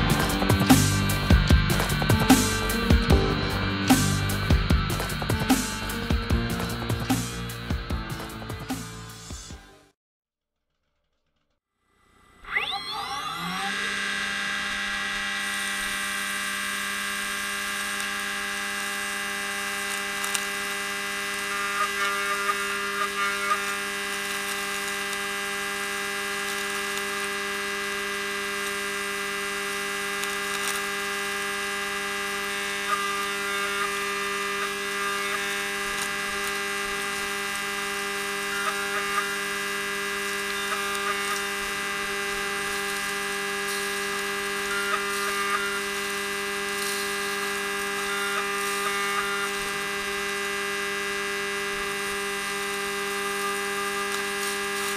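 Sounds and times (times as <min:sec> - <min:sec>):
machine spindle whine: 0:00.0 - 0:09.4, 0:11.9 - 0:54.9
short crackling bursts: 0:14.2 - 0:54.9.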